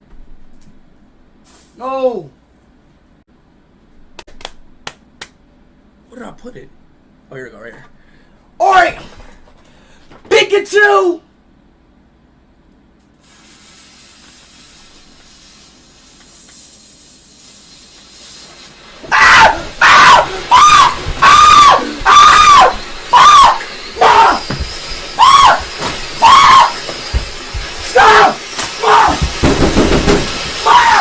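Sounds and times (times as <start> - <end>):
firework fuse hissing: 1.4 - 1.8, 13.1 - 31.0
shrill firework whistles: 16.7 - 31.0.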